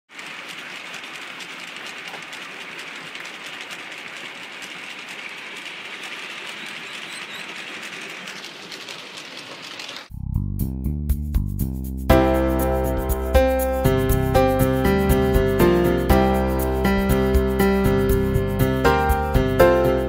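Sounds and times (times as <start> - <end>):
model train wheels rattling on rails: 0.1 - 10.1
music: 10.1 - 20.0.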